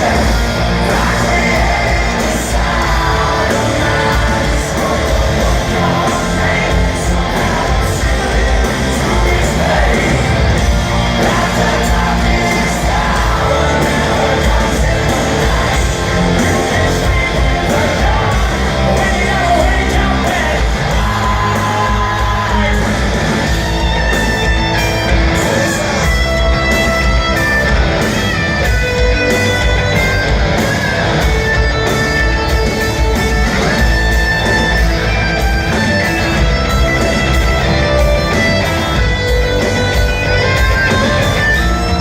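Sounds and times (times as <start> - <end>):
sung and shouted vocals: 0.0 - 27.1
electric guitars: 0.0 - 42.0
hard rock band playing live: 0.0 - 42.0
heavy drums: 0.0 - 42.0.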